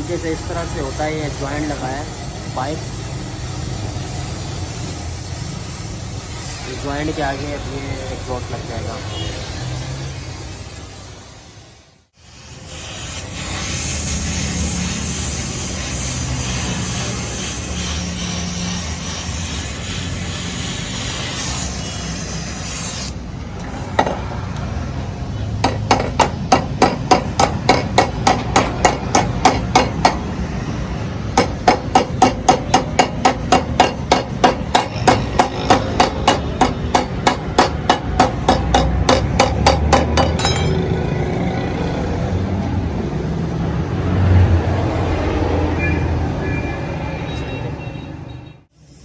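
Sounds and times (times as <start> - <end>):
hissing noise: 0.0 - 41.7
rapid hammer blows: 25.6 - 30.4, 31.3 - 41.3.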